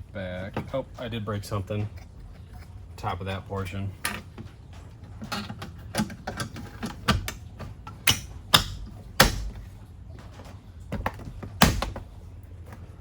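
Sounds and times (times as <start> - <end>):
plastic trim clicks and knocks: 5.6 - 9.7, 11.0 - 12.1.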